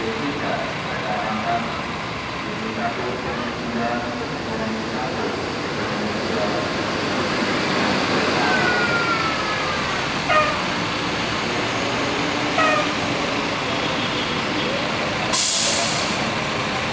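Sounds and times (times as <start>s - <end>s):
crowd noise: 0.0s - 16.9s
traffic: 0.0s - 16.9s
bus horns: 9.3s - 16.3s.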